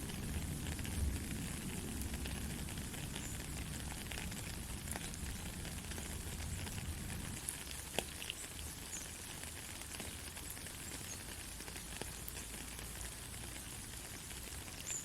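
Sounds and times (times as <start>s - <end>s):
raindrop clicks: 0.0s - 9.0s
soft rain hiss: 0.0s - 15.0s.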